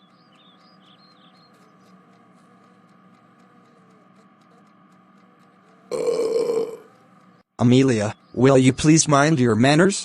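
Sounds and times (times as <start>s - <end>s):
light ticks: 0.0s - 5.9s.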